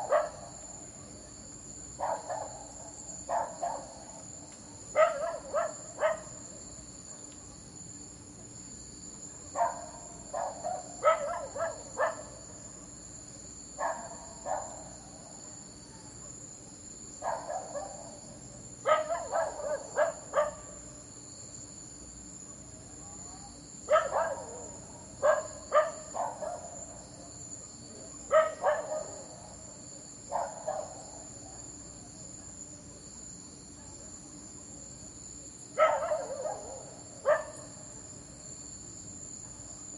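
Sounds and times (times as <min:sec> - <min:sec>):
dog barking: 0:00.0 - 0:00.5, 0:02.0 - 0:04.2, 0:04.9 - 0:06.4, 0:09.3 - 0:13.0, 0:13.8 - 0:16.4, 0:17.2 - 0:18.2, 0:18.8 - 0:20.8, 0:23.9 - 0:27.0, 0:28.1 - 0:29.5, 0:30.3 - 0:31.7, 0:33.8 - 0:34.1, 0:35.8 - 0:37.8.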